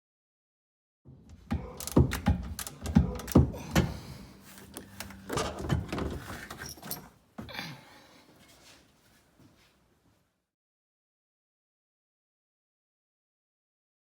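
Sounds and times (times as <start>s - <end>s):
knocks and clanks: 1.1s - 7.1s.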